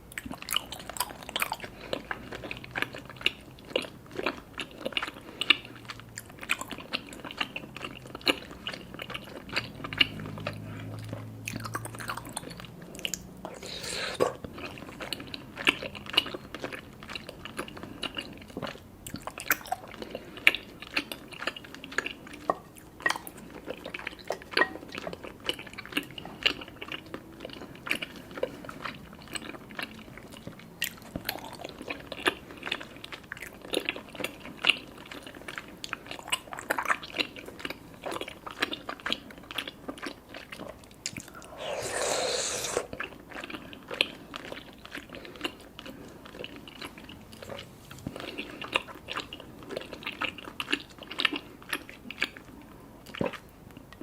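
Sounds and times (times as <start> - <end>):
close chewing with wet mouth clicks: 0.0 - 54.0
slurp through a straw: 13.5 - 14.4, 41.2 - 43.1.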